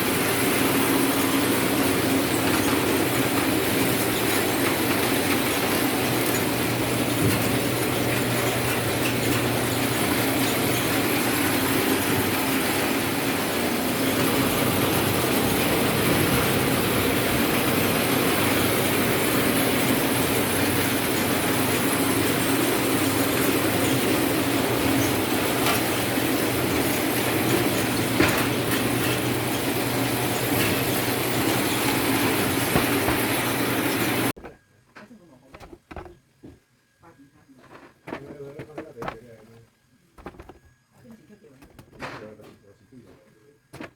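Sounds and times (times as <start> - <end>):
sorting machine rattling: 0.0 - 34.3.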